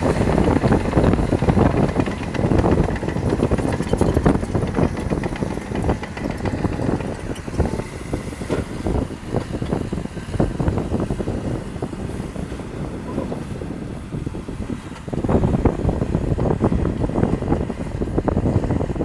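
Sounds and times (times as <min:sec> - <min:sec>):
clanks and knocks of tracks and stone: 0:00.0 - 0:11.2
bulldozer diesel engine under load: 0:00.0 - 0:19.0.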